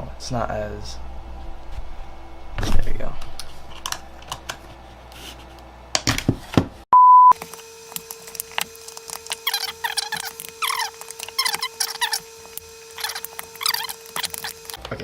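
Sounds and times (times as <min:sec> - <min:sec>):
loud steady beep: 0:07.0 - 0:07.4
squeaky scraping strokes: 0:07.5 - 0:14.8.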